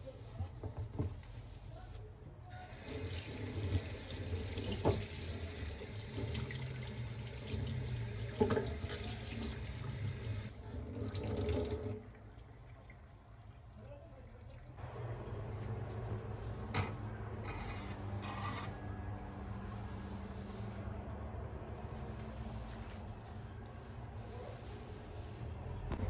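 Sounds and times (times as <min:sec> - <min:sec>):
water running: 0:02.7 - 0:12.9.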